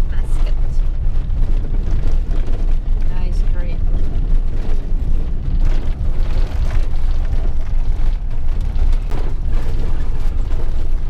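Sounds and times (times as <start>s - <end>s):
van engine and road noise: 0.0s - 11.0s.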